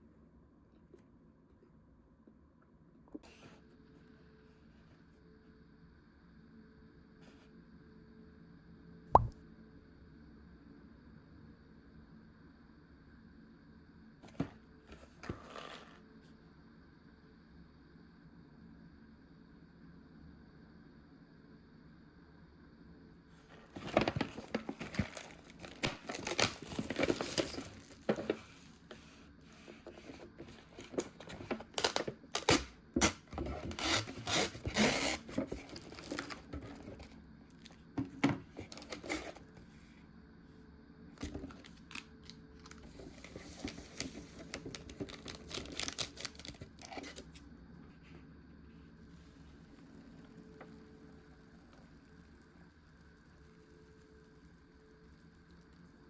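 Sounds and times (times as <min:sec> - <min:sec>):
packaging tearing and rustling: 0:23.6 - 0:28.8, 0:29.8 - 0:37.7, 0:38.6 - 0:39.4, 0:41.2 - 0:47.4.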